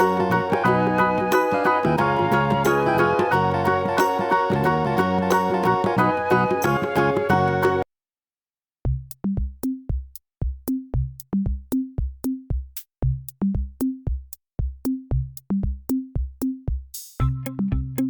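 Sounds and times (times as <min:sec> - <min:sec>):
electronic drum-machine beat: 0:08.9 - 0:18.0.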